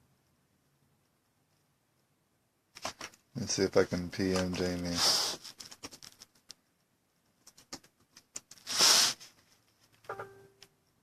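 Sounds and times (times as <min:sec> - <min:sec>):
short hiss: 0:04.9 - 0:05.5, 0:08.6 - 0:09.4
typing taps and clicks: 0:07.4 - 0:08.6.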